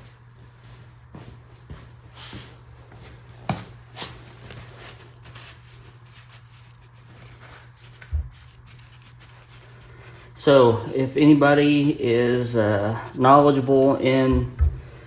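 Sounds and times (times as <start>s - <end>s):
steady low hum: 0.0s - 15.0s
dull thump: 14.3s - 14.9s.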